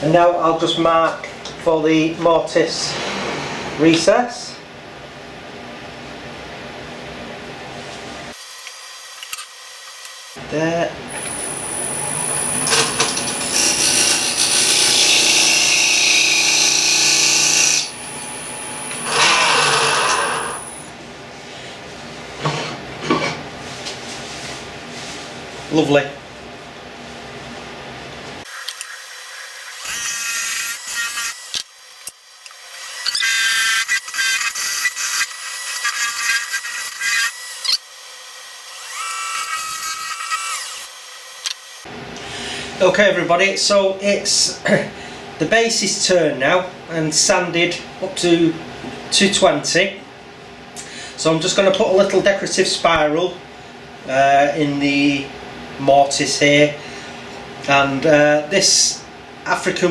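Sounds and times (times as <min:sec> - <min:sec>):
turning tool cutting wood: 0:11.1 - 0:20.9, 0:32.4 - 0:37.9, 0:38.6 - 0:41.9
wood lathe running: 0:11.1 - 0:20.9.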